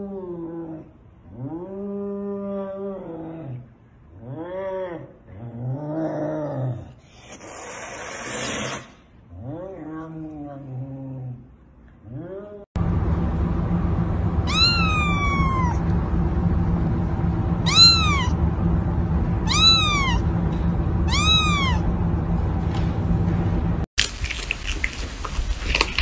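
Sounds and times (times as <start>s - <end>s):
steady low hum: 9.1s - 26.0s
cat meowing: 14.4s - 15.8s, 17.6s - 18.4s, 19.4s - 20.2s, 21.1s - 21.8s.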